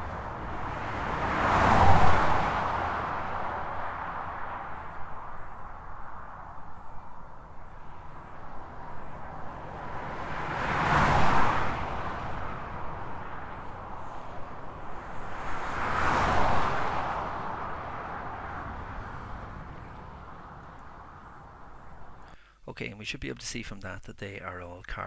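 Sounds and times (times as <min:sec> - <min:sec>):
cars passing at speed: 0:00.0 - 0:22.4.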